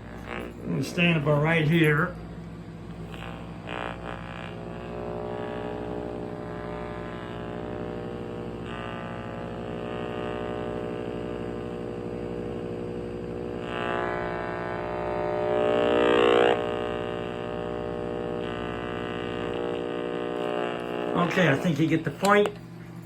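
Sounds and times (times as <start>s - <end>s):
analyzer speaker buzzing: 0.0s - 23.0s
microwave oven hum: 0.0s - 23.0s.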